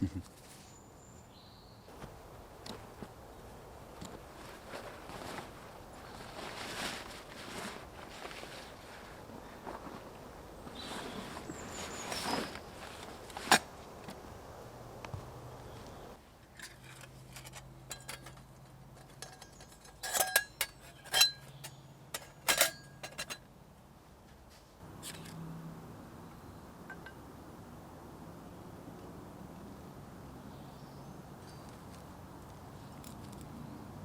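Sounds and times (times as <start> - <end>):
metal cookware clinking: 17.8 - 18.4, 19.0 - 23.4.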